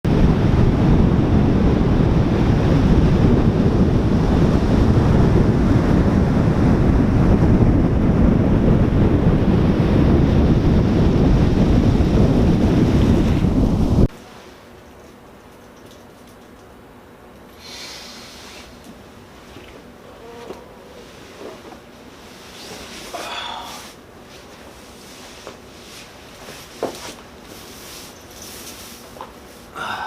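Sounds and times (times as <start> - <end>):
wind buffeting microphone: 0.1 - 14.1.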